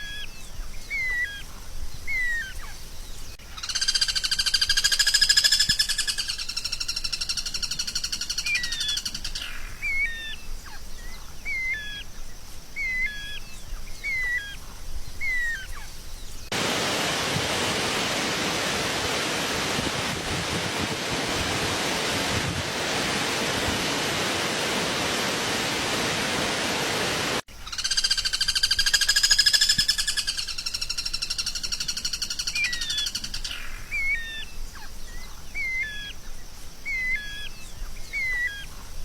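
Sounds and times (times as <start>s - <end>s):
steady hiss: 0.0s - 27.7s.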